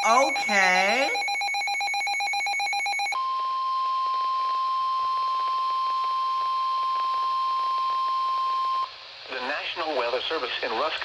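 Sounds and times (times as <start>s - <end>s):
steady alarm tone: 0.0s - 3.2s.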